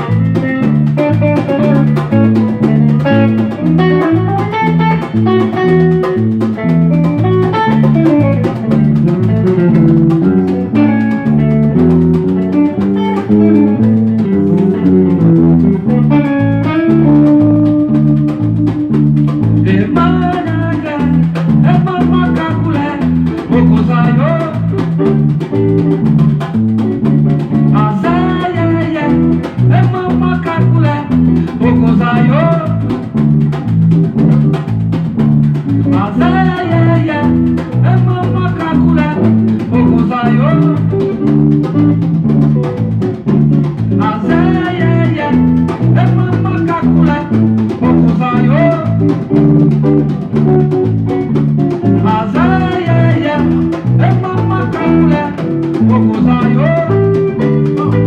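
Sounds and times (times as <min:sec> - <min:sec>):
electric bass line: 0:00.0 - 0:58.0
plucked guitar melody: 0:00.0 - 0:58.0.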